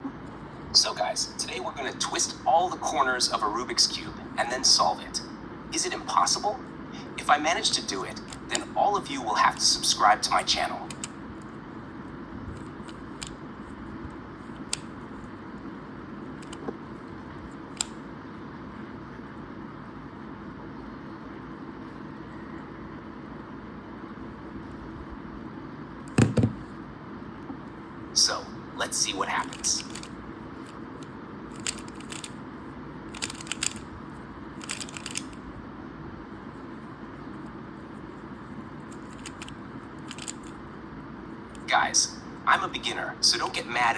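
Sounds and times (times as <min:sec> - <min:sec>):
steady background hiss: 0:00.0 - 0:43.9
plastic puzzle cube clicks: 0:08.3 - 0:08.7, 0:10.9 - 0:11.2, 0:16.4 - 0:16.6, 0:17.7 - 0:18.0, 0:29.4 - 0:30.8, 0:31.5 - 0:32.4, 0:33.1 - 0:33.8, 0:34.6 - 0:35.4, 0:38.9 - 0:40.5.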